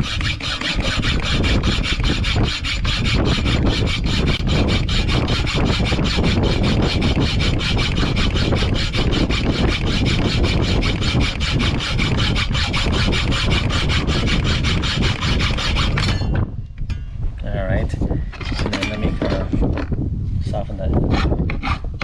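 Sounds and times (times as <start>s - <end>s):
hacksaw cutting: 0.0s - 16.3s, 21.0s - 21.8s.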